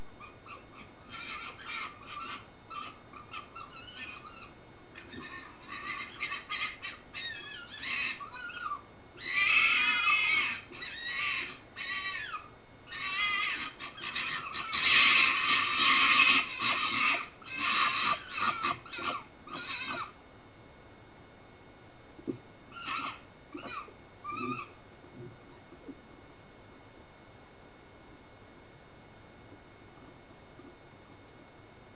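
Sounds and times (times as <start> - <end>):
foxes calling: 0.0 - 20.2, 22.7 - 24.8.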